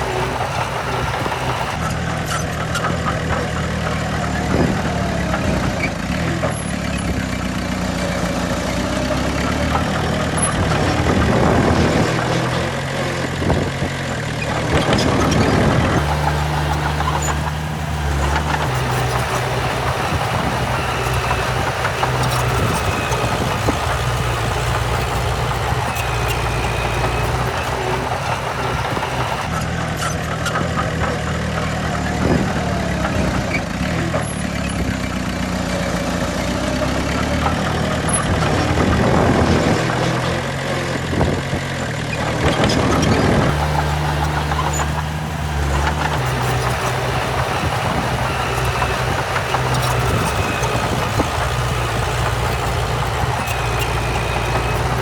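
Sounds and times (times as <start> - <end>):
heavy diesel engines running: 0.0 - 2.0, 15.8 - 29.6, 43.5 - 55.0.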